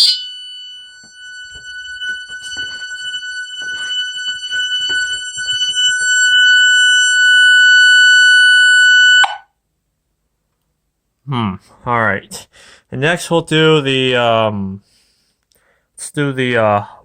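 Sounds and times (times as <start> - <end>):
high-pitched electronic alarm tone: 0.0 - 9.5.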